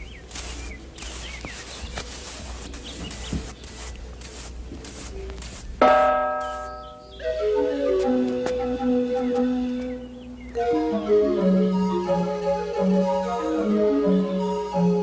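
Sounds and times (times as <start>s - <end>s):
steady hiss: 0.0s - 7.2s
bell ringing: 5.8s - 7.0s.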